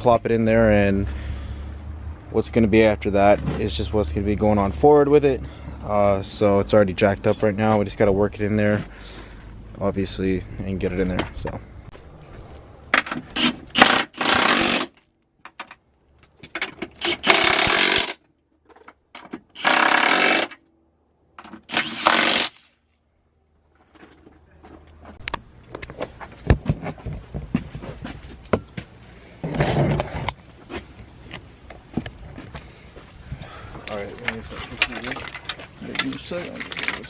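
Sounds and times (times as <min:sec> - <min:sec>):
rattling power tool bursts: 0:13.2 - 0:15.0, 0:16.9 - 0:18.2, 0:19.5 - 0:20.6, 0:21.6 - 0:22.8.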